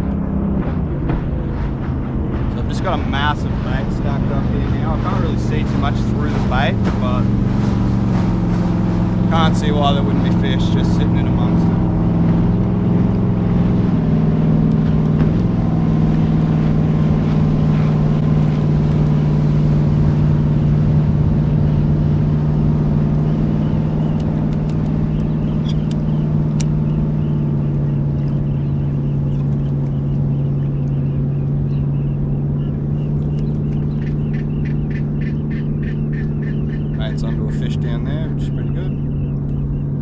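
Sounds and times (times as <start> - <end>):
boat motor humming: 0.0 - 40.0.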